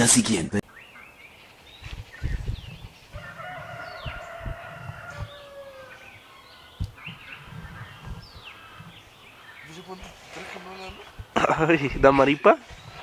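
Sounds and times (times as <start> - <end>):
small birds chirping: 0.6 - 13.0
rooster crowing: 3.1 - 8.9.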